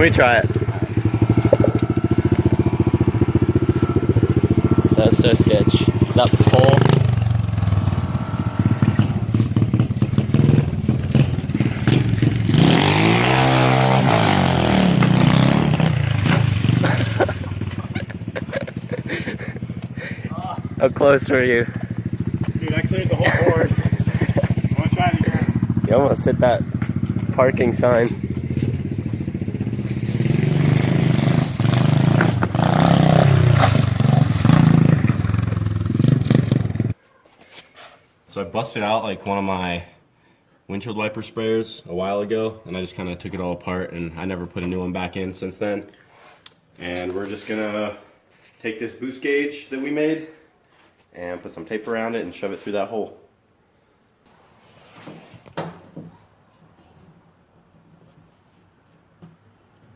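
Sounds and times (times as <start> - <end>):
motorbike engine revving: 0.0 - 37.0.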